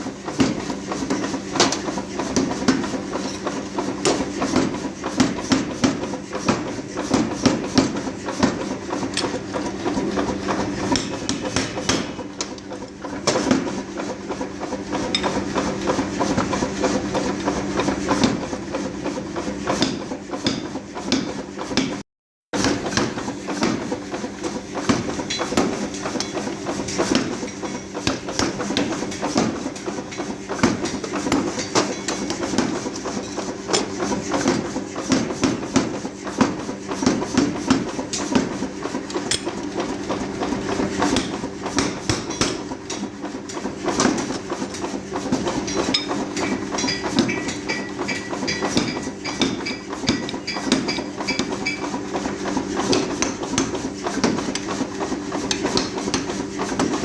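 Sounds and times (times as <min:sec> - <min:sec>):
hammers striking metal: 0:10.8 - 0:12.6, 0:24.9 - 0:34.6, 0:37.3 - 0:39.7, 0:41.1 - 0:43.1, 0:45.5 - 0:51.9, 0:52.9 - 0:54.7.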